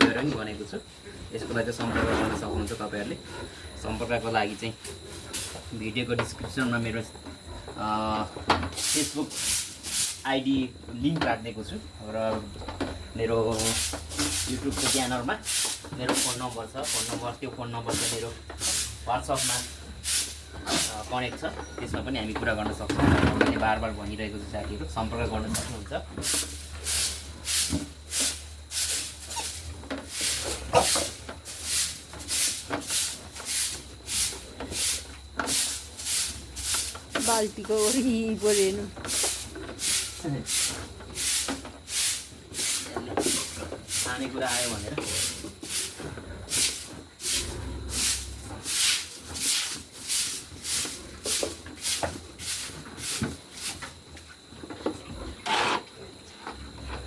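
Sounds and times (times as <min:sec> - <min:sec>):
stiff broom sweeping floor: 0:04.5 - 0:05.8, 0:08.7 - 0:10.4, 0:13.5 - 0:21.2, 0:25.4 - 0:54.4.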